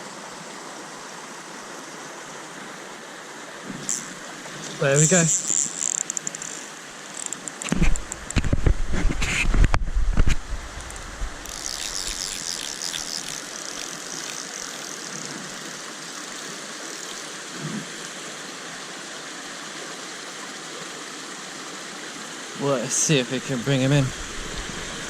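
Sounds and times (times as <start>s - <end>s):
stream water rushing: 0.0s - 25.0s
fast high ticking: 10.8s - 17.2s.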